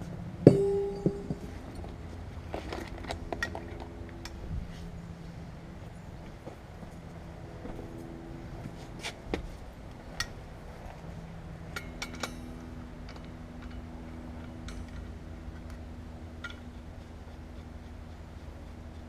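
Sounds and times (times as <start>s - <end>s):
steady low hum: 0.0s - 19.0s
held tones: 0.5s - 1.8s
light metallic clinks: 0.5s - 2.0s.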